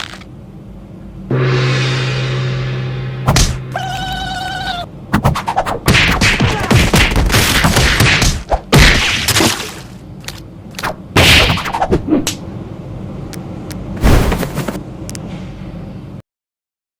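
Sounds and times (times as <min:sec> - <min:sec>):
cartoon slapstick fight effects: 0:05.1 - 0:09.5, 0:10.8 - 0:12.4.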